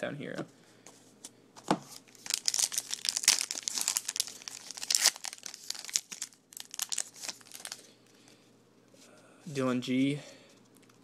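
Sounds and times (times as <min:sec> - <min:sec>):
foil wrapper tearing and crinkling: 0:01.9 - 0:07.9.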